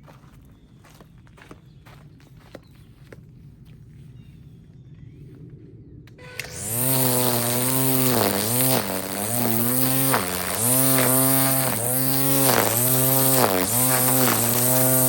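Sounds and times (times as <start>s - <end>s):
string trimmer motor whining: 6.2s - 15.0s.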